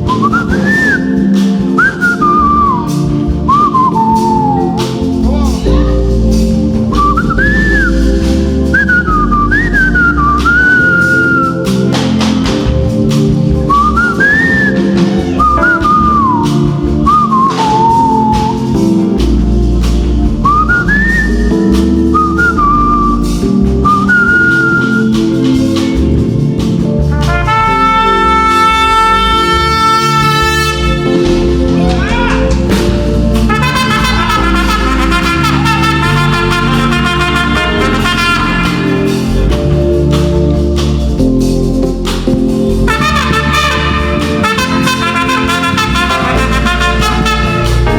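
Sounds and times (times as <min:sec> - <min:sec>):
bass: 0:00.0 - 0:47.9
sliding lead melody: 0:00.0 - 0:47.9
sustained keyboard chords: 0:00.0 - 0:47.9
drum hits: 0:25.0 - 0:47.9.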